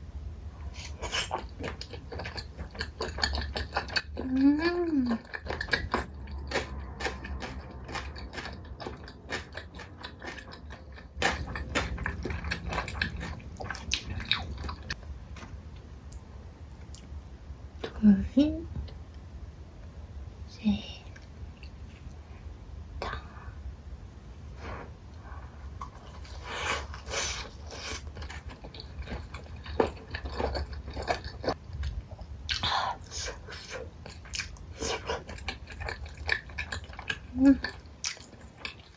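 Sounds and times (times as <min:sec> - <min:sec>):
chewing and biting: 0:00.8 - 0:15.4, 0:25.8 - 0:38.9
crunchy clicks of eating: 0:01.4 - 0:15.0.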